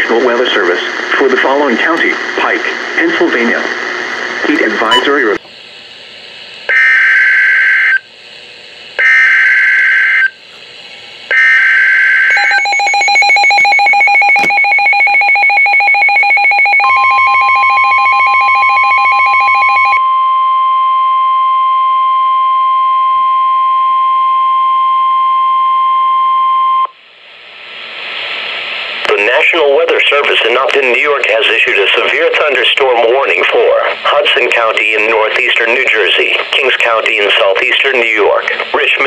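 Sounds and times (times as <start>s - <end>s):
pulsing two-tone attention signal: 4.9s - 5.1s, 12.3s - 26.9s
steady single-pitch alert tone: 12.3s - 26.9s.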